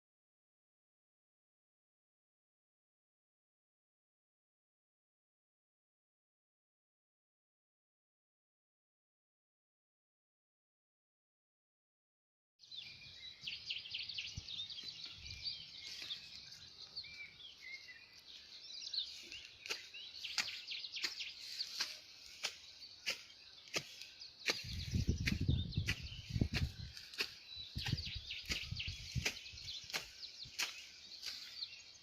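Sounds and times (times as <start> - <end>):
birds chirping: 12.6 - 32.0.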